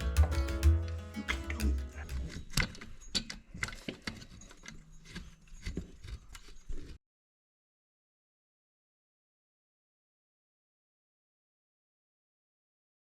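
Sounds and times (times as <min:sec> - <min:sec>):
hand tools and metal parts clinking: 0:00.0 - 0:07.0.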